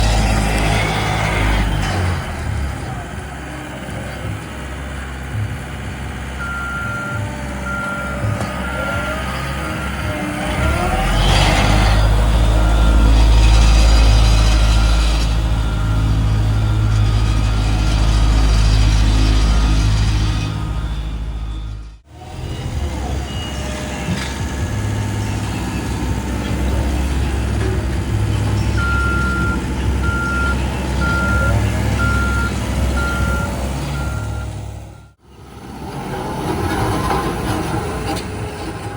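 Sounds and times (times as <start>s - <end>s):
diesel machinery rumbling: 0.0s - 38.9s
reversing alarm beeping: 4.8s - 35.2s.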